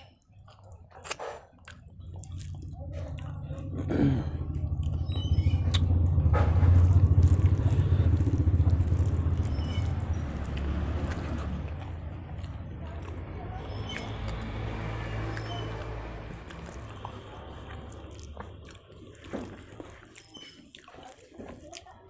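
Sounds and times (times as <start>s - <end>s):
small mouth clicks and smacks: 0.0s - 3.5s, 5.6s - 6.1s, 15.3s - 22.0s
chewing and eating: 0.0s - 22.0s
low rumble: 1.9s - 19.8s.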